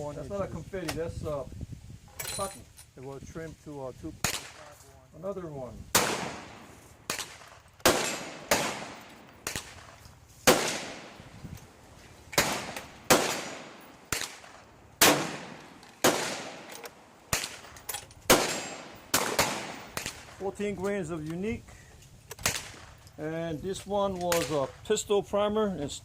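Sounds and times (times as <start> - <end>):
gunshots: 4.2 - 4.7, 5.9 - 11.3, 12.3 - 20.4, 22.4 - 23.0.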